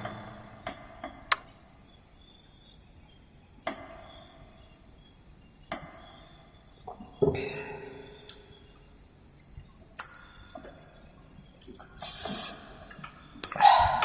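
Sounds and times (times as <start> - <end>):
sharp clicks: 0.0 - 1.5
cricket trilling: 0.0 - 14.0.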